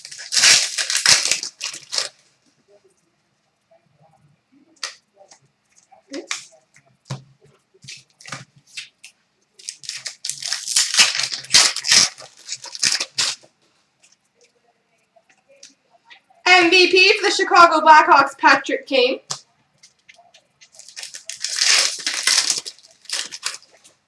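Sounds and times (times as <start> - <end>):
wrappers torn and crinkled: 0.0 - 2.3, 9.6 - 13.5, 19.9 - 24.0.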